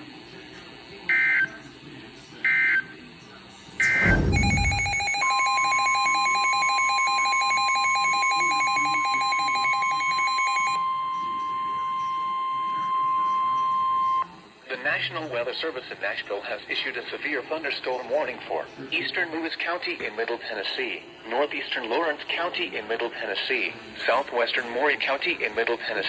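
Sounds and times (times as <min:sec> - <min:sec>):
digital header tone bursts: 0:03.7 - 0:10.3
fast pulsing electronic beeps: 0:03.7 - 0:14.2
steady warning alarm tone: 0:03.7 - 0:14.3
thump: 0:03.8 - 0:05.0.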